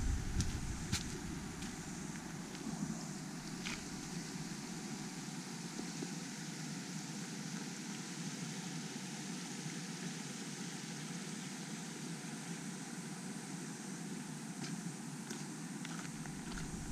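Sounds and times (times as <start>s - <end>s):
steady outdoor rushing noise: 0.0s - 4.8s, 16.2s - 16.9s.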